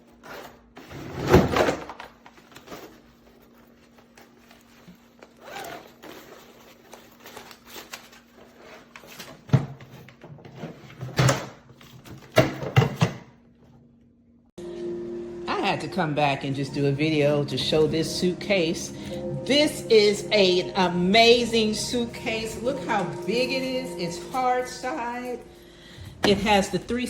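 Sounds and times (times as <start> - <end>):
suitcase clicks and rustling: 0.2 - 8.2.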